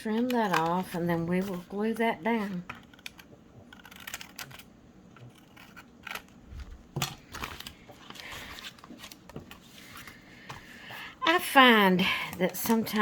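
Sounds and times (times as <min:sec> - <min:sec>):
scissors cutting paper: 0:00.0 - 0:07.7.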